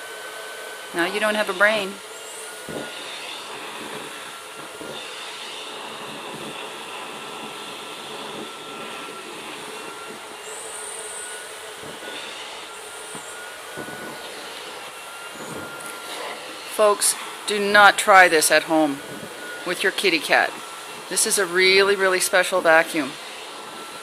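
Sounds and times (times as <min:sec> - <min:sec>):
vacuum cleaner whine: 0:00.0 - 0:24.0.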